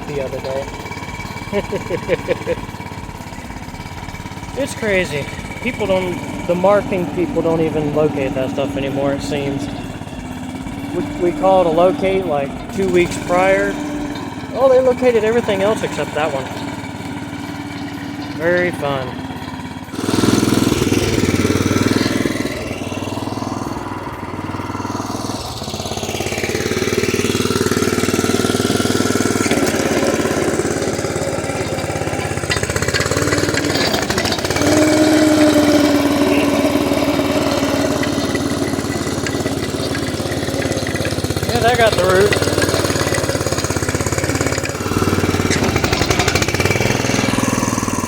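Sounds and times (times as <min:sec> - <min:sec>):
small engine running: 0:00.0 - 0:48.0.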